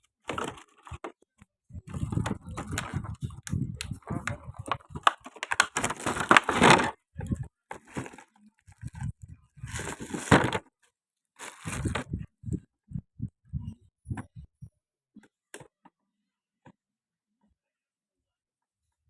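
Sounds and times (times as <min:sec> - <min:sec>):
packaging crinkling rustles: 0:05.0 - 0:06.9, 0:07.7 - 0:09.0, 0:09.7 - 0:10.6, 0:11.4 - 0:12.0.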